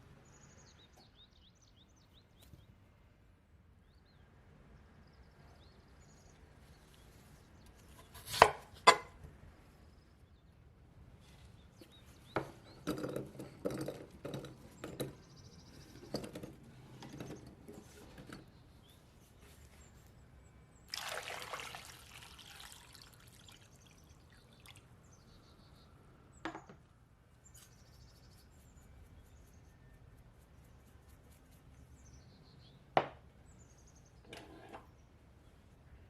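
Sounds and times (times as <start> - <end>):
liquid pouring: 20.9 - 24.9.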